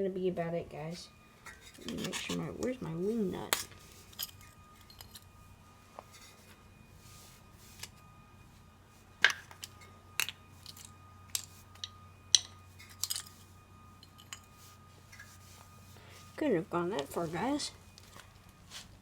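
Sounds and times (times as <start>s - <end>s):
faint steady hum: 0.0s - 19.0s
small parts clicking and knocking: 9.2s - 13.4s.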